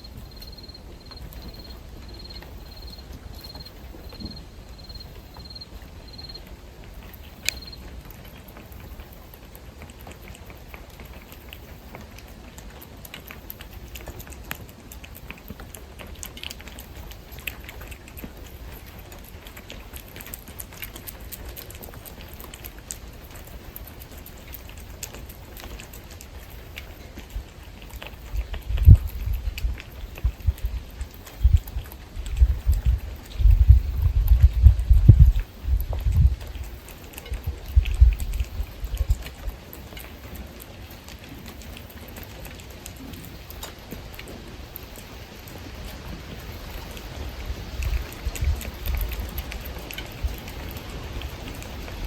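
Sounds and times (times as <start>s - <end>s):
insect chirping: 0.0s - 6.5s, 7.1s - 7.9s
light clicks and patter: 0.0s - 52.0s
steady low hum: 0.0s - 52.0s.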